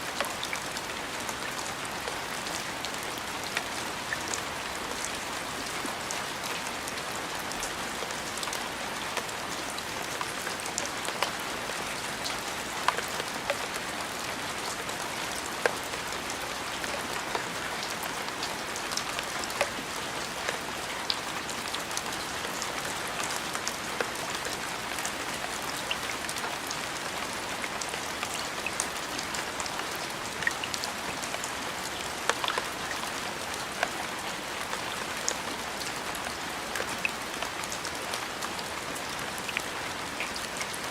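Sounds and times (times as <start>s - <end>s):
steady rain falling: 0.0s - 40.9s
raindrop ticks: 12.1s - 13.9s, 25.4s - 35.4s.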